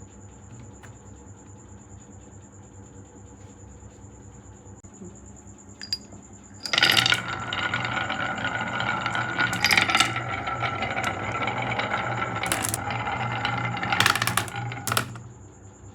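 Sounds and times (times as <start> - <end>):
marbles rattling down wooden run: 0.5 - 0.9, 6.6 - 15.3
marbles clicking on wood: 6.6 - 15.3.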